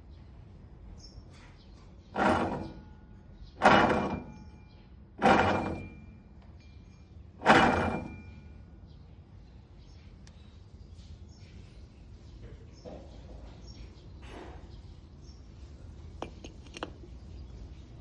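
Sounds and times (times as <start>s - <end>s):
worn bearing grinding: 2.1s - 6.3s, 7.4s - 8.6s, 16.2s - 18.0s.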